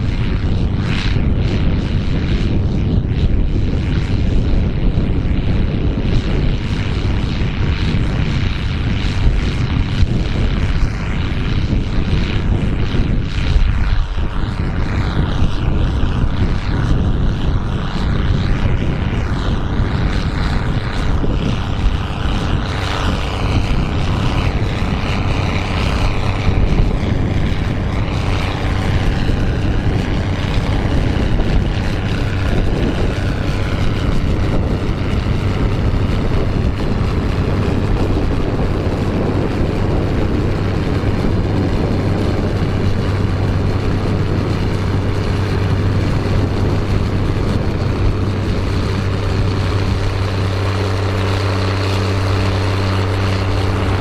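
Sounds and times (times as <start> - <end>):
tractor engine droning: 3.5 - 54.0.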